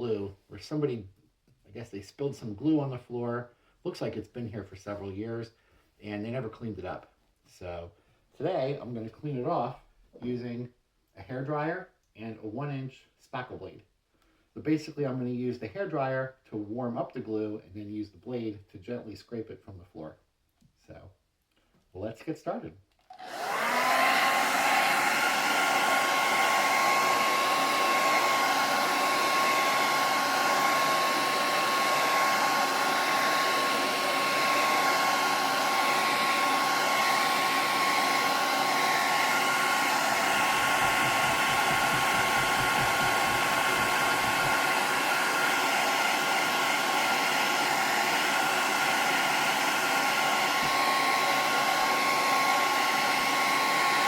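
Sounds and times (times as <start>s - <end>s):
hairdryer whining: 23.0s - 54.0s.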